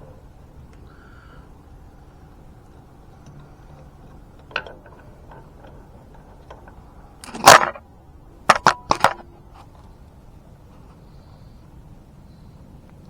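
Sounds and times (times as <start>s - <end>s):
metal parts clicking: 3.2s - 7.8s, 8.5s - 9.2s
metal parts clattering: 3.8s - 7.8s, 8.5s - 9.2s.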